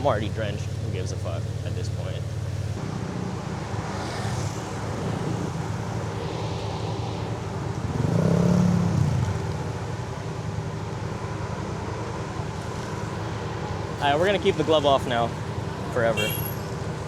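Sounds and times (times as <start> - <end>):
passing vehicle engine: 0.0 - 17.0
scooter engine running: 0.0 - 17.0
hiss of wet road: 4.0 - 10.5
wind noise: 4.5 - 10.1.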